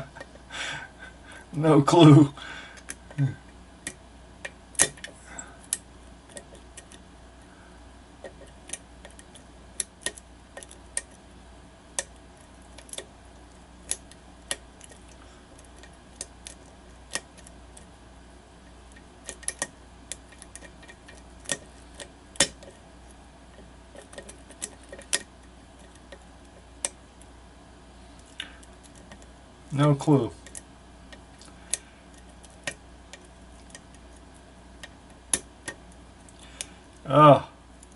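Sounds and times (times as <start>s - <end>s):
lock pick metallic clicks: 3.8s - 7.0s.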